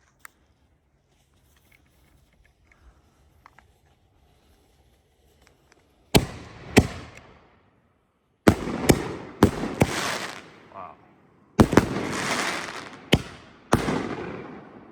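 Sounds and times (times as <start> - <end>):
firework bangs: 6.2 - 7.5, 8.5 - 14.9.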